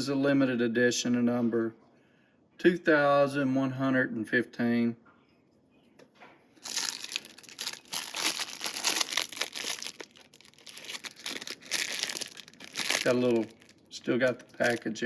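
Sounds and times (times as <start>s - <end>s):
packaging crinkling: 6.6s - 15.0s.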